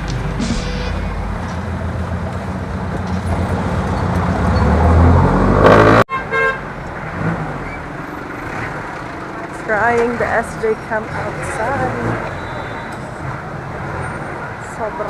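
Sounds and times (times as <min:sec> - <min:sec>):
vehicle engine running: 0:00.0 - 0:05.6, 0:06.6 - 0:15.0
street traffic: 0:00.0 - 0:15.0
vehicle horn: 0:05.8 - 0:06.7, 0:12.1 - 0:13.2.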